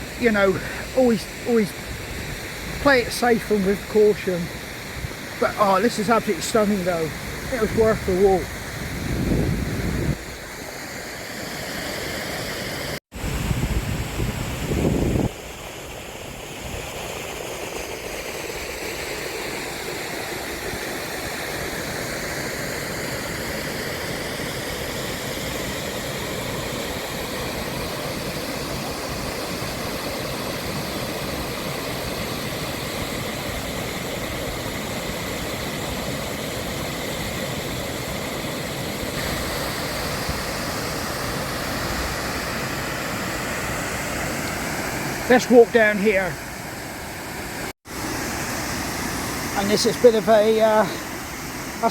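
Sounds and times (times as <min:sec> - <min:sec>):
waterfall rushing: 0:00.0 - 0:09.0, 0:17.3 - 0:51.9.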